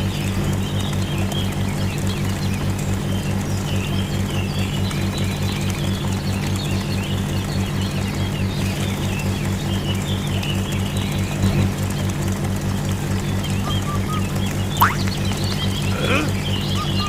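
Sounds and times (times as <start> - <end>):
birds chirping: 0.0 - 17.0
small engine chugging: 0.0 - 17.0.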